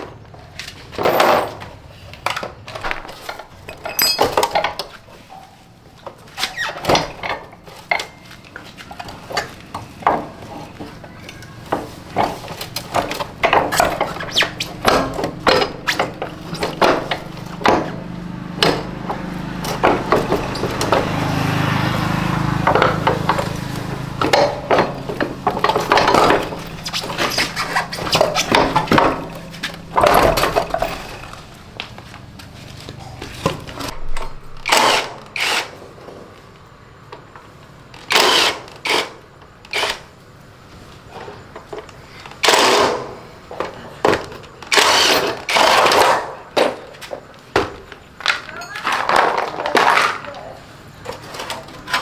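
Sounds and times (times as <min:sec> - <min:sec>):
hard objects clinking and knocking: 0:01.0 - 0:01.7, 0:03.6 - 0:04.9.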